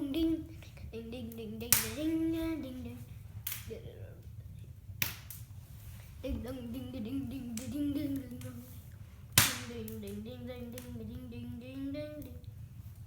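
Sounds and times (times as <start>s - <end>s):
child singing long notes: 0.0s - 3.0s, 6.2s - 8.7s, 9.6s - 12.4s
sharp smack: 9.4s - 9.7s.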